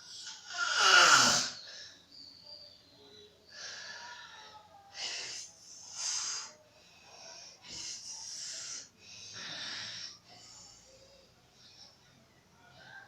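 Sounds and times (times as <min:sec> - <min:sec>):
woman snoring: 0:00.1 - 0:01.6.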